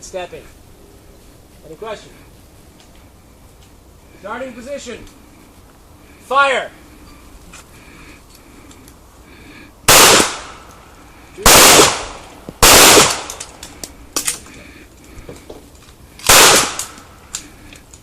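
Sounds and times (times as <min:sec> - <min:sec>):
faint gunshot cracks: 0:09.9 - 0:10.6, 0:16.2 - 0:17.0
loud handgun shots: 0:09.9 - 0:10.6, 0:11.4 - 0:13.5, 0:16.2 - 0:17.0.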